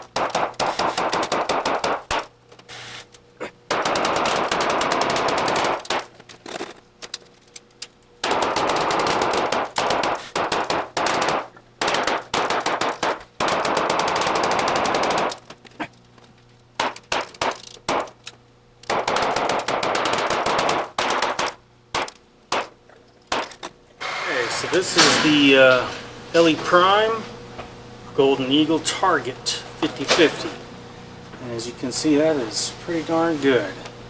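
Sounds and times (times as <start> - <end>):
rapid pistol shots: 0.0 - 2.3, 3.7 - 6.1, 8.2 - 15.4, 16.8 - 18.2, 18.8 - 23.6.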